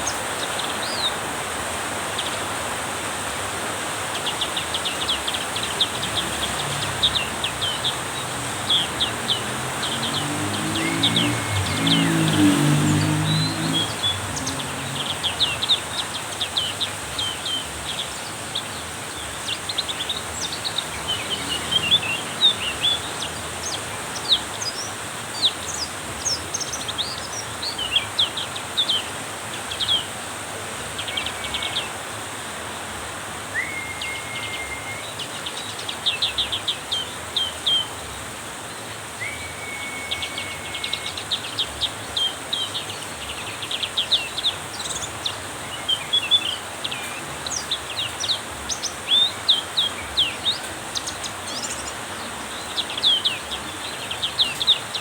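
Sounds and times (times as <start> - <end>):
heavy rain hiss: 0.0 - 55.0
bird chirping and trilling: 4.2 - 29.1, 39.2 - 55.0
bird whistles: 33.5 - 35.2, 39.2 - 41.3.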